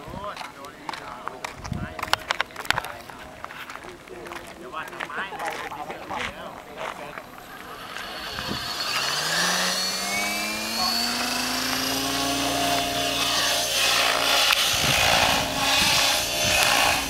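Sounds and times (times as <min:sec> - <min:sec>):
model helicopter whine: 0:07.4 - 0:17.0.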